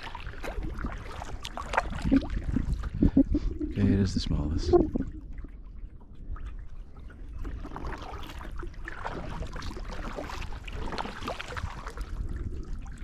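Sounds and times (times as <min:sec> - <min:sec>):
water lapping and splashing: 0:00.0 - 0:13.0
low rumble: 0:01.9 - 0:05.8.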